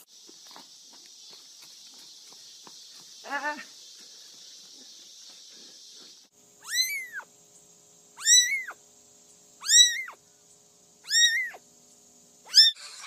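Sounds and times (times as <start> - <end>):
steady hiss: 0.0 - 13.0
cat meowing: 6.6 - 7.2, 8.2 - 8.8, 9.6 - 10.2, 11.0 - 11.6, 12.5 - 12.8.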